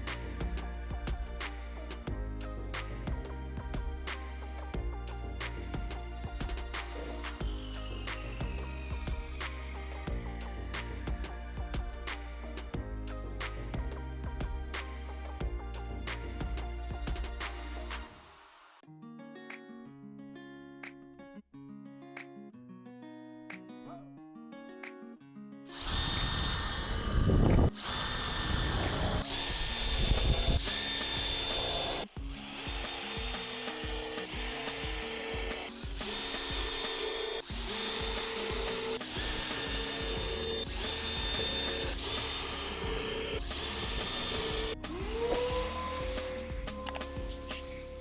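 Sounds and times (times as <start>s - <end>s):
coarse grinding noise: 0.0s - 18.1s, 25.7s - 48.0s
power tool motor whine: 6.4s - 12.6s, 25.7s - 48.0s.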